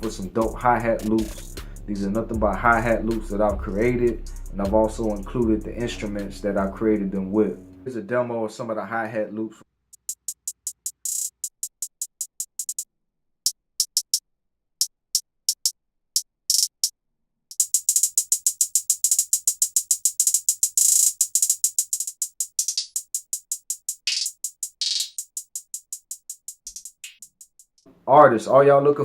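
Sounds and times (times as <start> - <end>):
closed hi-hat ticks: 0.0 - 6.8, 9.9 - 12.8, 15.5 - 16.9, 17.5 - 27.9
open hi-hat swishes: 0.0 - 7.6, 9.9 - 12.8, 17.5 - 27.8.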